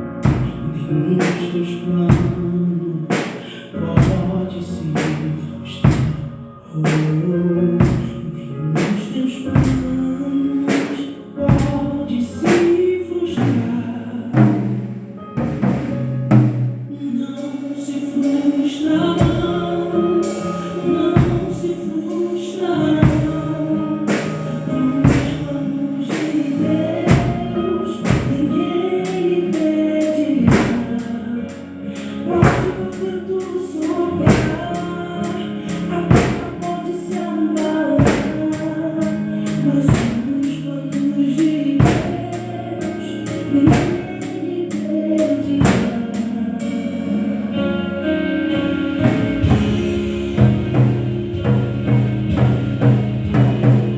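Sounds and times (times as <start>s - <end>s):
gospel song with sung vocals: 0.0s - 53.9s
heavy drum hits: 21.2s - 21.7s, 23.0s - 23.5s, 25.0s - 25.5s, 27.1s - 28.6s, 30.5s - 31.1s, 32.4s - 33.0s, 34.3s - 34.8s, 36.1s - 36.7s, 38.0s - 38.5s, 41.8s - 42.2s, 45.6s - 46.0s, 49.1s - 53.9s.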